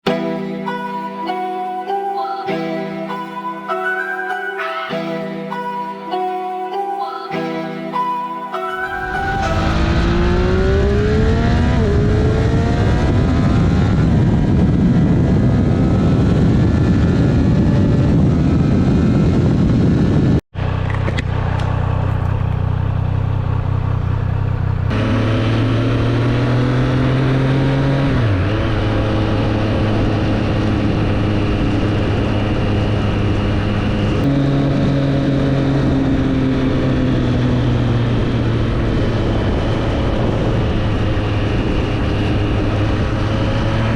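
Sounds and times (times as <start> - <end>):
heavy rushing noise: 8.8 - 20.4, 24.9 - 43.9
motorcycle engine revving: 8.9 - 43.9.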